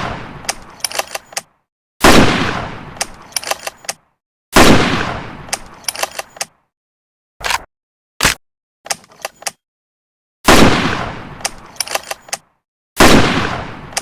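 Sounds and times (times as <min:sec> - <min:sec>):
metallic rifle bolt clicks: 0:00.4 - 0:01.5, 0:03.0 - 0:04.0, 0:05.5 - 0:06.6, 0:11.4 - 0:12.5
rifle shots: 0:02.0 - 0:03.7, 0:04.6 - 0:05.7, 0:10.5 - 0:12.1, 0:13.0 - 0:14.0.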